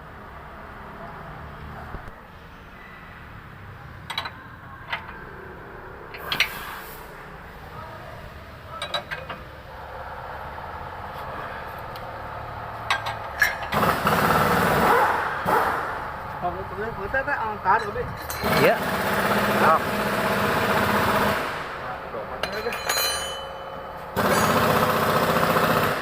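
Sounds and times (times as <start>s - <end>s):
metallic tool knocks and clanks: 22.4s - 23.9s.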